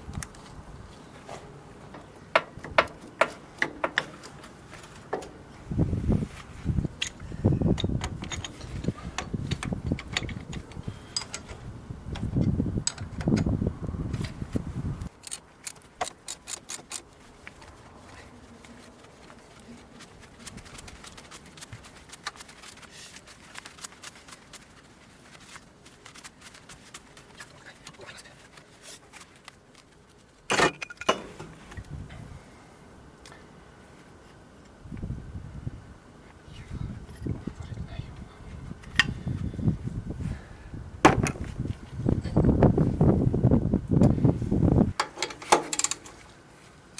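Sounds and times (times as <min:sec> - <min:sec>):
low rumbling handling noise: 0:00.0 - 0:22.0, 0:36.8 - 0:46.3
hand tools clinking on metal: 0:07.8 - 0:11.5.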